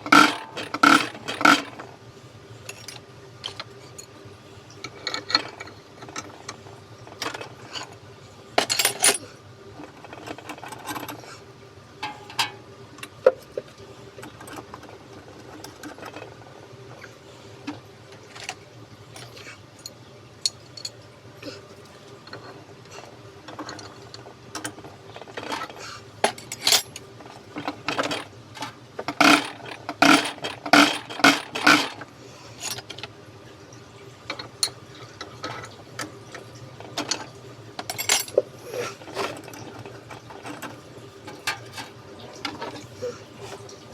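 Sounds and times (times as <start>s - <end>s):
metal tools clinking and tapping: 0.1s - 1.7s, 12.0s - 13.2s, 24.6s - 33.1s, 34.3s - 38.5s, 39.1s - 42.9s.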